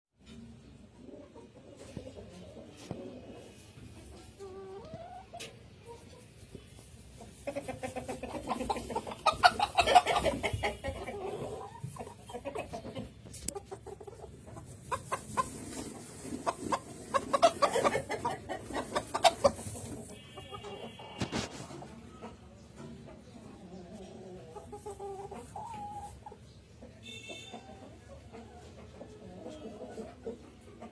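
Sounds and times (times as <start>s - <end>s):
chickens clucking: 0.2s - 30.9s.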